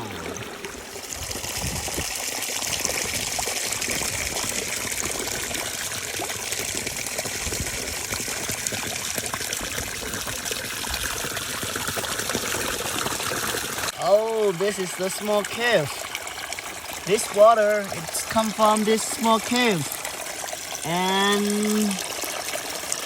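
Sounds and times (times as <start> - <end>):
waterfall splashing: 20.8 - 22.1.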